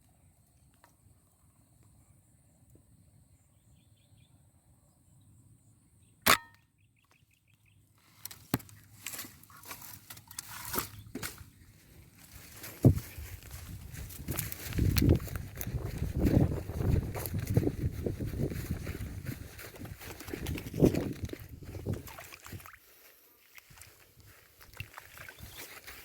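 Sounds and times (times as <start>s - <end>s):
footsteps through vegetation: 8.0s - 26.0s.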